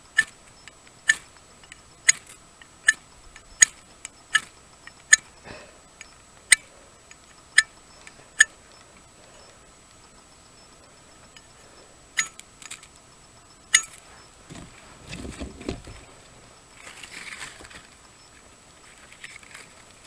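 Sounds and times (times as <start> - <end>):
soft rustling and handling: 13.9 - 20.0.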